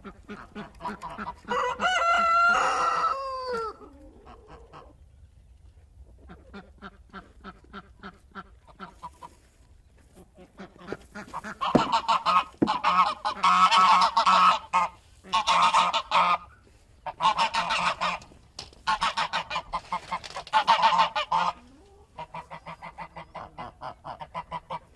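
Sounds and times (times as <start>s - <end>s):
geese honking: 10.3s - 24.9s.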